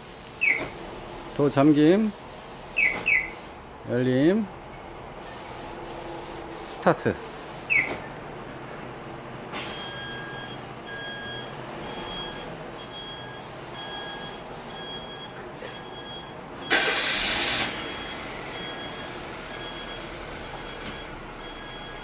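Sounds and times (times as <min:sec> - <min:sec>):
car starter cranking: 0:16.7 - 0:18.2.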